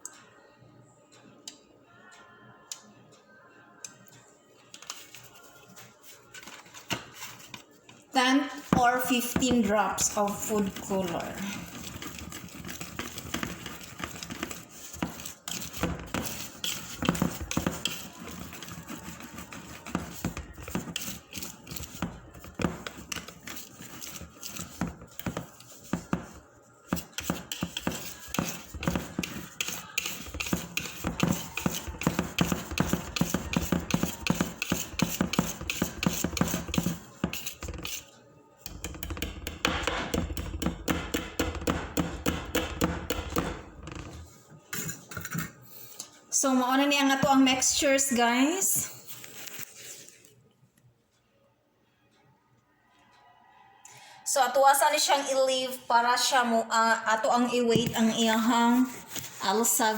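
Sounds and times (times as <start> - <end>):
whisk clicking against bowl: 8.7 - 38.1.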